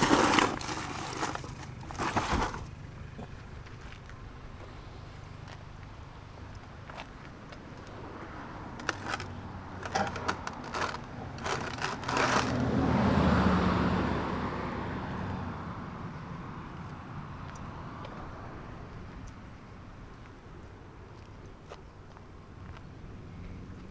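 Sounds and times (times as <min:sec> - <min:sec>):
car passing on road: 0:04.1 - 0:21.1.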